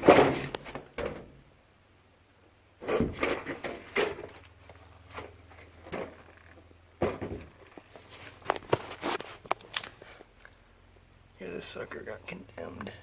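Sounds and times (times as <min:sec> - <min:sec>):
knocks and clunks of handling: 0:00.0 - 0:01.4, 0:02.8 - 0:10.0.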